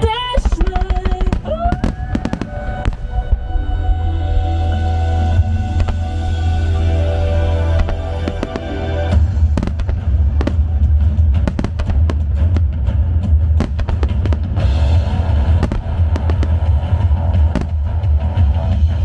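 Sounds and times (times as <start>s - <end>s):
fireworks bangs and cracks: 0.0s - 3.4s, 5.8s - 6.2s, 7.8s - 19.0s
heavy low rumble: 0.0s - 19.0s
music over loudspeakers: 0.0s - 19.0s.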